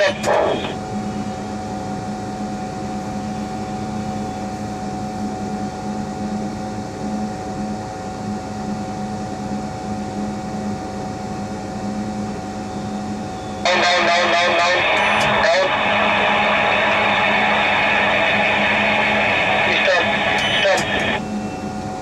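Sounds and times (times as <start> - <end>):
tower crane machine hum: 0.0 - 22.0.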